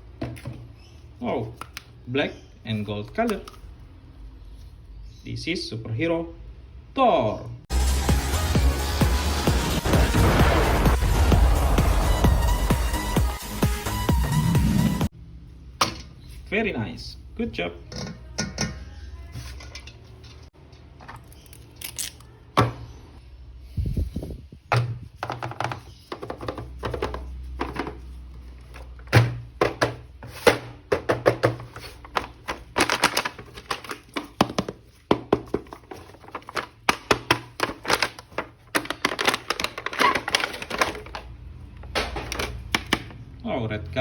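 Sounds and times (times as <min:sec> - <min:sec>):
plastic pieces clicking and knocking: 0:30.9 - 0:41.3.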